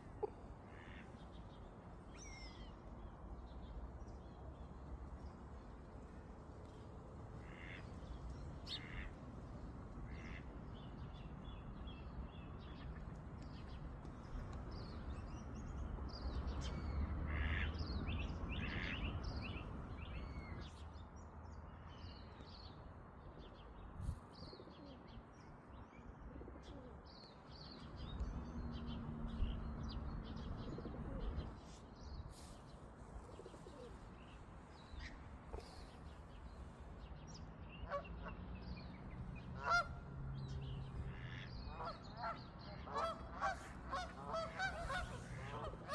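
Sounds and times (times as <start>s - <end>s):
birds chirping: 26.6s - 45.9s.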